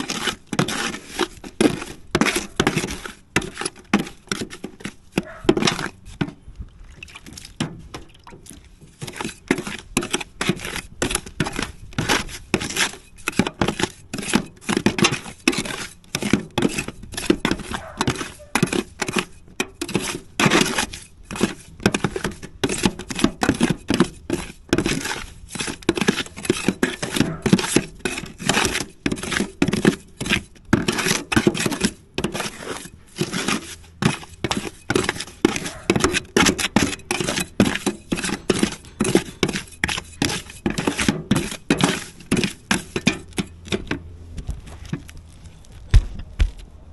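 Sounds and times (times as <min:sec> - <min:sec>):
hand tool scraping roofing material: 0:00.0 - 0:06.4, 0:07.3 - 0:45.2.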